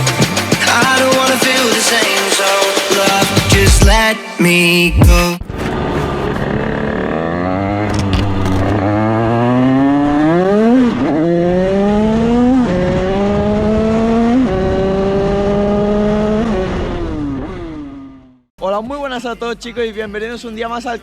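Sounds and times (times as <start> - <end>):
motorcycle engine accelerating: 5.4 - 18.5.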